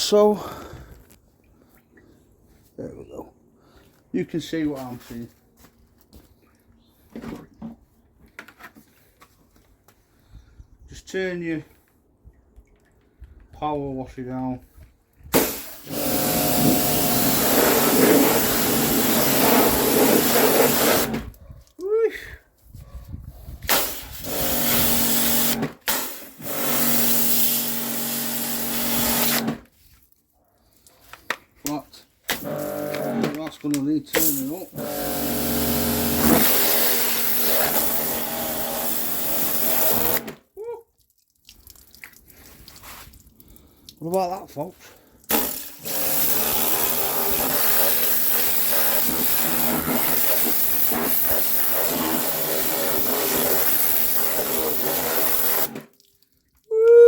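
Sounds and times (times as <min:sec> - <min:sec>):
water jet spraying: 0:15.3 - 0:21.1, 0:23.7 - 0:29.4, 0:45.3 - 0:55.8
pressure washer pump humming: 0:15.4 - 0:21.2, 0:23.7 - 0:29.6, 0:32.3 - 0:33.6, 0:34.2 - 0:40.4, 0:45.3 - 0:55.9.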